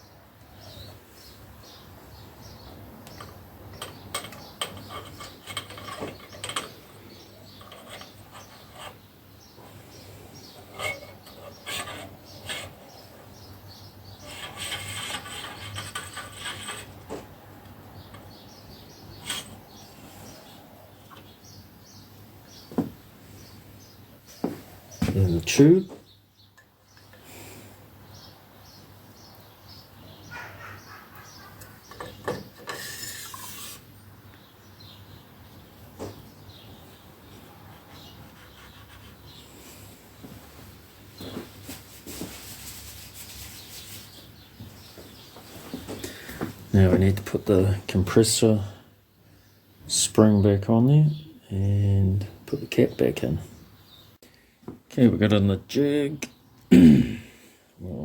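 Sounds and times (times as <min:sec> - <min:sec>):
light knocks of metal parts: 0:03.0 - 0:09.0, 0:31.2 - 0:33.0
spring scraping inside tube: 0:04.2 - 0:06.8, 0:07.5 - 0:09.1, 0:10.4 - 0:13.0, 0:14.2 - 0:17.0, 0:19.1 - 0:19.8, 0:31.8 - 0:33.9
brief scraping rub: 0:32.6 - 0:33.9.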